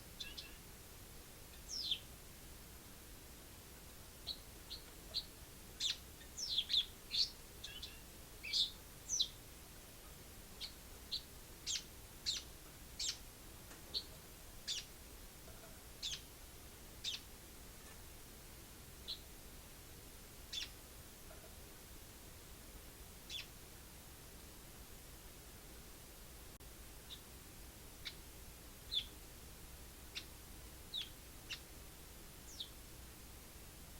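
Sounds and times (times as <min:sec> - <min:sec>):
sparrow chirping: 0:00.1 - 0:00.6, 0:01.5 - 0:02.1, 0:04.2 - 0:09.4, 0:10.6 - 0:13.3, 0:13.9 - 0:16.4, 0:17.0 - 0:18.0, 0:19.0 - 0:19.3, 0:20.5 - 0:20.8, 0:23.2 - 0:23.6, 0:27.0 - 0:27.3, 0:28.0 - 0:28.3, 0:28.9 - 0:29.2, 0:30.1 - 0:31.7, 0:32.4 - 0:32.8.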